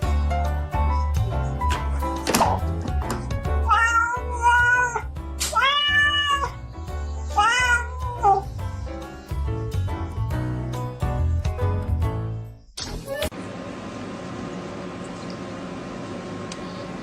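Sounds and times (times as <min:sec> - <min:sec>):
background music with bass line: 0:00.0 - 0:03.8, 0:08.0 - 0:13.0
cat meowing: 0:03.6 - 0:08.6.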